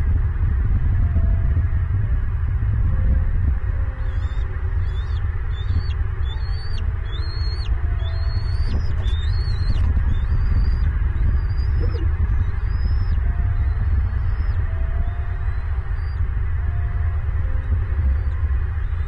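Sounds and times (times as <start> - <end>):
steady low rumble: 0.0 - 19.0
bird calling: 4.0 - 16.2.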